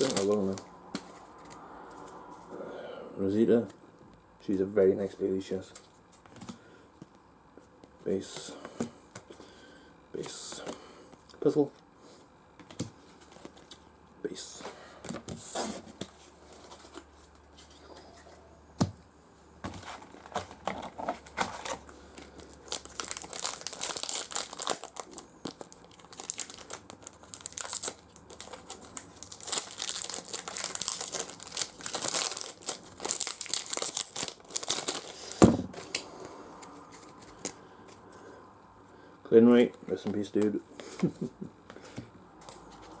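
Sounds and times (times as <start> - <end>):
foil wrapper tearing and crinkling: 0.0 - 0.6, 20.0 - 35.5.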